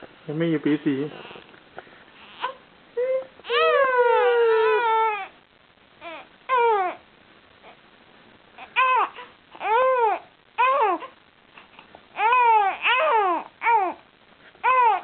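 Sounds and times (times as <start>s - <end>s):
baby crying fussily: 2.2s - 5.4s, 6.0s - 7.0s, 8.6s - 11.2s, 12.2s - 14.0s, 14.6s - 15.0s.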